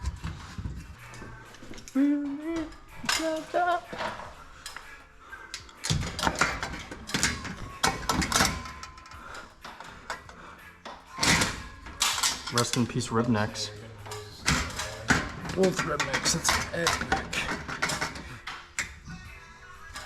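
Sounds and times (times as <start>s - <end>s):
metal tools clanking: 2.5s - 10.4s, 11.1s - 19.2s.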